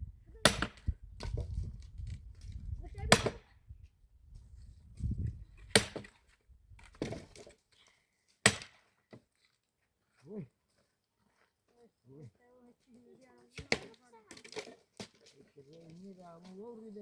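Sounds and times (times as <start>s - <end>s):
axe chopping wood: 0.4s - 1.5s, 3.0s - 3.5s, 5.6s - 6.2s, 6.9s - 7.5s, 8.4s - 8.9s, 13.6s - 15.2s.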